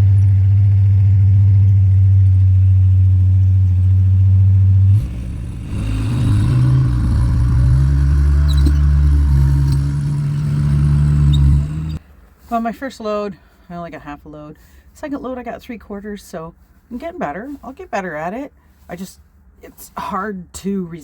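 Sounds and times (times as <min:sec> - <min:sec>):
rattling: 0:00.0 - 0:12.0
skid steer engine running: 0:00.0 - 0:12.0.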